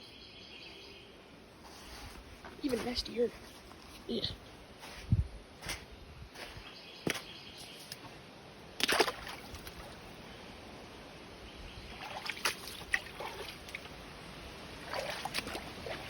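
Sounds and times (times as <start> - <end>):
feet splashing in a creek: 7.1 - 10.2, 11.8 - 16.0
running water: 11.8 - 16.0.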